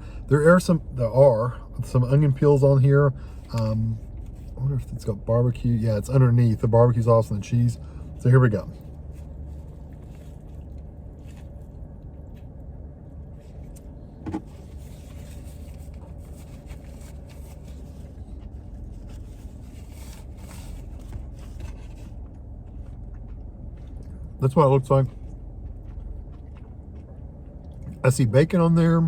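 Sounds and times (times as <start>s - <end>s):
car engine hum inside cabin: 0.0s - 29.0s.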